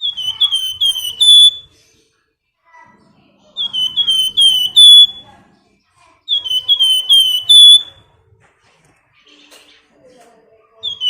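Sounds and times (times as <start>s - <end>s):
songbird whistling: 0.0s - 1.8s, 3.6s - 5.3s, 6.3s - 8.1s, 10.8s - 11.0s.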